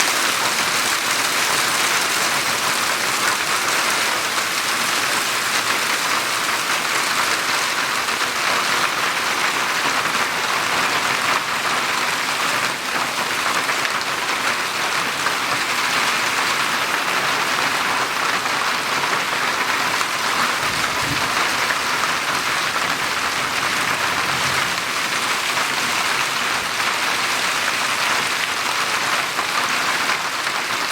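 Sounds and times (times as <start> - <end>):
hailstones striking surfaces: 0.0 - 10.3.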